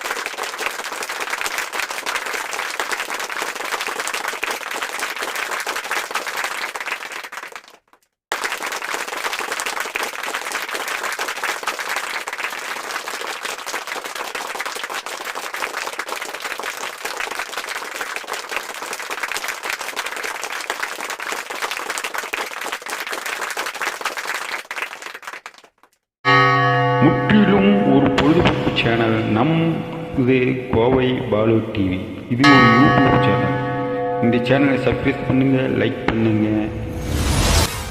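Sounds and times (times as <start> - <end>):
audience applause: 0.0 - 26.0.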